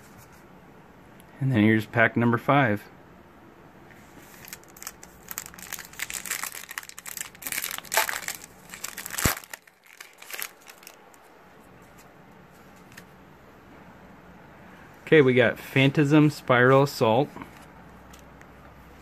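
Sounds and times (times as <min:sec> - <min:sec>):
foil wrapper tearing and crinkling: 0:04.3 - 0:11.0
foil wrapper snap: 0:04.4 - 0:11.0.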